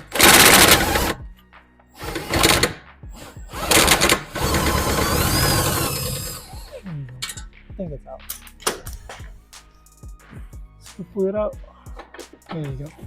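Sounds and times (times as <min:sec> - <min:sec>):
impact wrench spinning: 0:00.0 - 0:01.2, 0:02.0 - 0:06.7.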